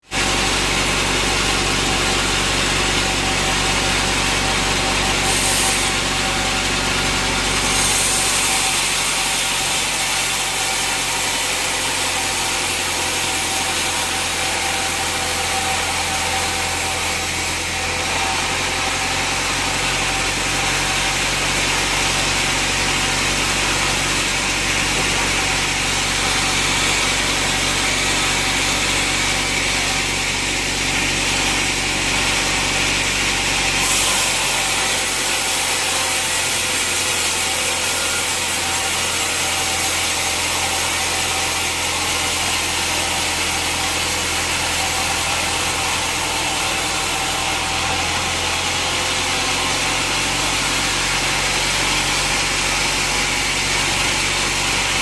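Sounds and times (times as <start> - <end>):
saw cutting through log: 0.0 - 55.0
high hiss of blade in wood: 5.2 - 6.0.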